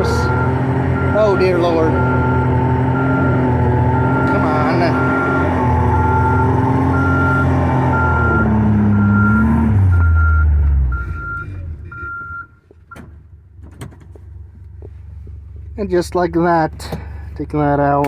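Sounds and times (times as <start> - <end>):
electronic warning beep: 0.0 - 12.6
vehicle engine labouring: 0.0 - 18.0.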